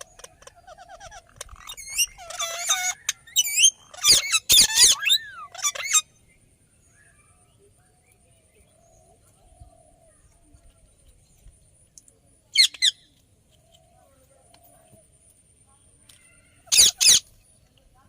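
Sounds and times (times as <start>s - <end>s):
parakeet calling: 0.0s - 6.1s, 16.7s - 17.2s
parakeet screeching: 0.7s - 6.0s, 16.7s - 17.2s.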